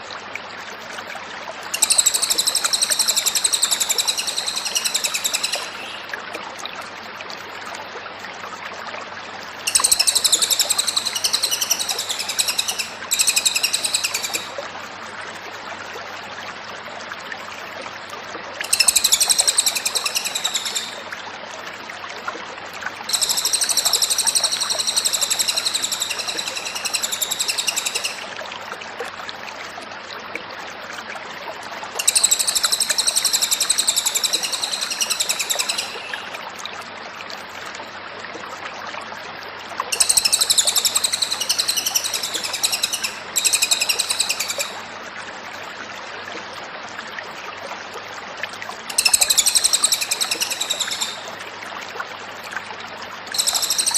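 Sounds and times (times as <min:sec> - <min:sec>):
songbird warbling: 0:01.7 - 0:06.1, 0:09.7 - 0:14.6, 0:18.6 - 0:21.0, 0:23.1 - 0:28.4, 0:32.0 - 0:36.3, 0:39.9 - 0:44.8, 0:48.9 - 0:51.3, 0:53.3 - 0:53.9
steady background hiss: 0:09.7 - 0:14.8, 0:18.6 - 0:21.4.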